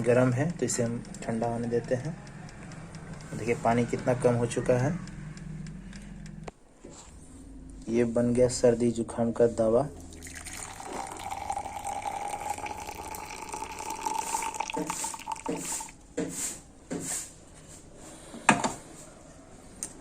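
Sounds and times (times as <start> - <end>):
liquid dripping: 10.0 - 16.0
liquid pouring in a stream: 10.0 - 16.0.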